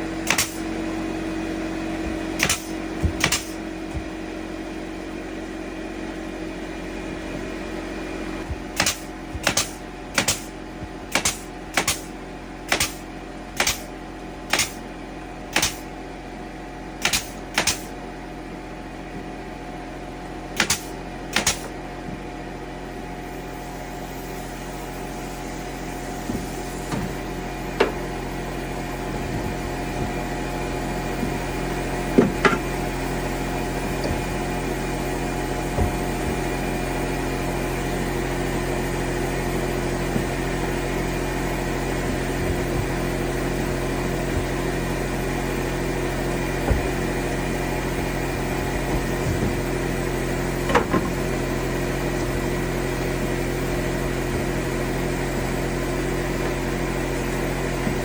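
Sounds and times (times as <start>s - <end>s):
steady hum: 0.0s - 14.9s, 20.0s - 58.0s
hammer striking nails into wood: 0.3s - 0.6s, 2.3s - 4.1s, 8.5s - 10.5s, 11.1s - 12.1s, 12.7s - 13.0s, 13.6s - 13.9s, 14.5s - 14.8s, 15.5s - 15.8s, 17.0s - 17.9s, 20.6s - 21.8s.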